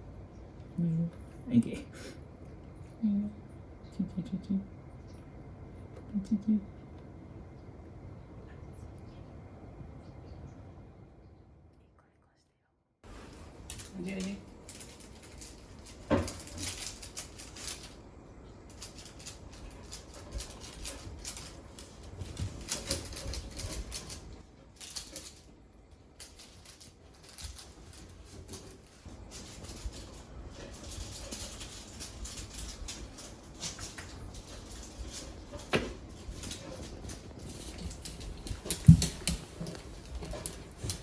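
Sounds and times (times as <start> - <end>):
cat pawsteps on floor: 26.2 - 41.0.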